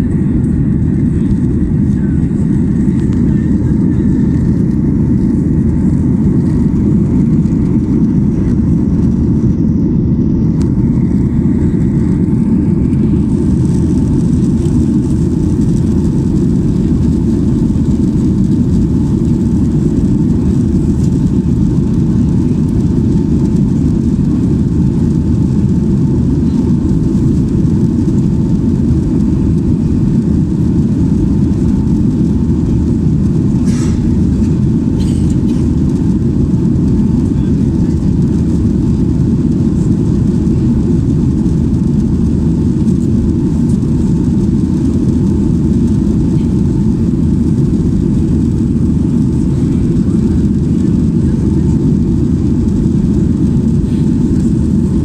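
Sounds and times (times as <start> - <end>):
jet engine roar in cabin: 0.0 - 55.0.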